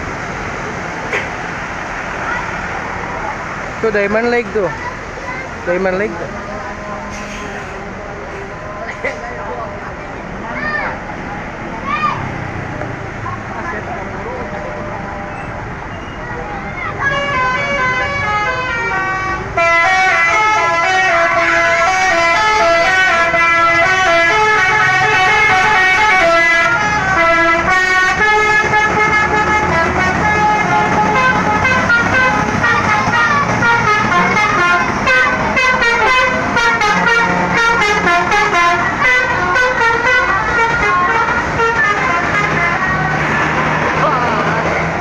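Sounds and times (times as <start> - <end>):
multi-tone bus horn tune: 6.4 - 10.3, 17.0 - 45.0.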